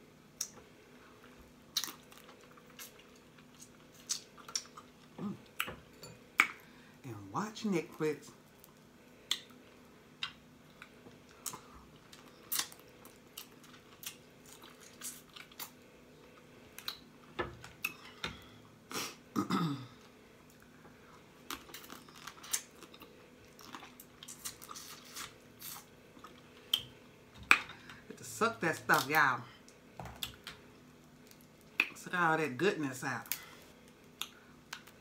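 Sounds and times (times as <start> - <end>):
chewing and smacking: 1.2 - 6.7, 8.5 - 18.2, 20.4 - 27.8, 29.7 - 32.0.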